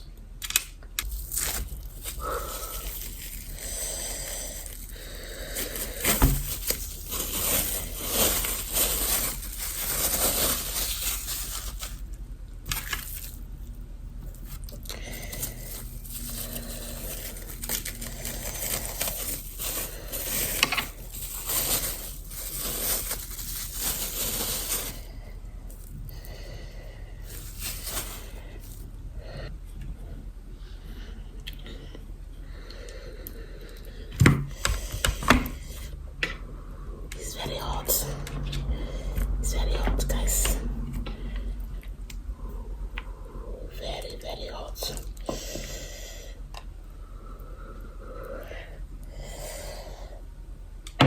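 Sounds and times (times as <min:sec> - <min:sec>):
packaging rustling and crinkling: 0:01.0 - 0:26.0, 0:27.3 - 0:28.9.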